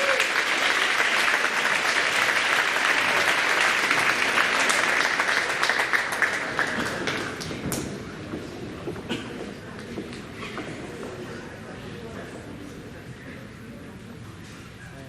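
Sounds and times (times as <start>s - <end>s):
audience applauding: 0.0s - 8.3s.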